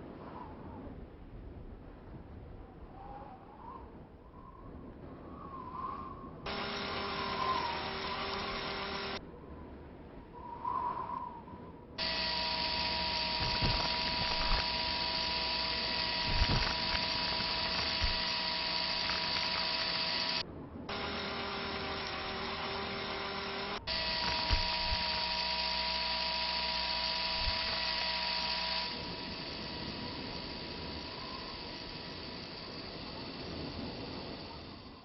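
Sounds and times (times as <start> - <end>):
lower-pitched whir: 5.4 - 9.3, 12.0 - 35.0
electric motor whirring: 6.5 - 9.2, 12.0 - 35.0.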